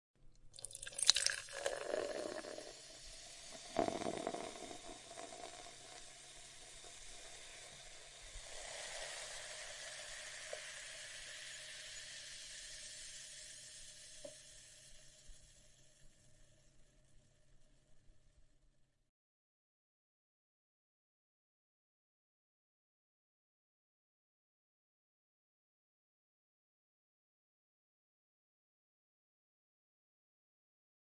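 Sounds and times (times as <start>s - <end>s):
liquid splashing and gurgling: 0.6s - 2.7s
coffee machine hiss: 0.7s - 16.4s.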